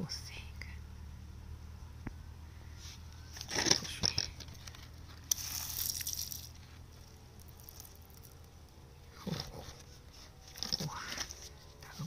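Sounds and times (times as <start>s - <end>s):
rock cracking: 3.4s - 6.6s
stone scraping and crumbling: 3.4s - 8.4s.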